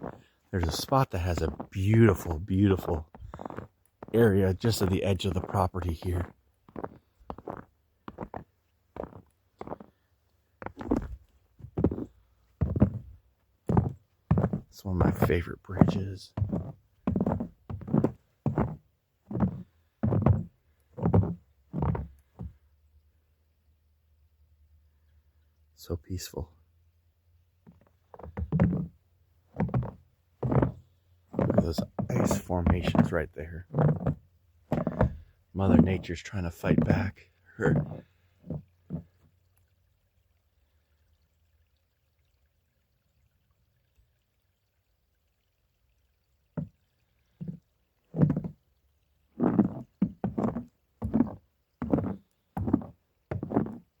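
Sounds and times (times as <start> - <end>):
boot footsteps: 0.0 - 10.0, 10.6 - 22.6, 27.7 - 29.0, 29.6 - 39.1, 48.2 - 48.6, 49.4 - 53.9
stream trickling among ice: 0.0 - 54.0.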